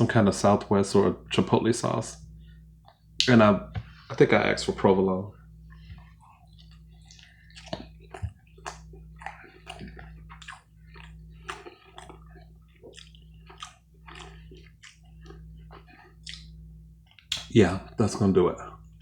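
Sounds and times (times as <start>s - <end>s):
steady low hum: 0.0s - 19.0s
chewing with wet mouth clicks: 2.8s - 3.3s, 5.7s - 17.5s.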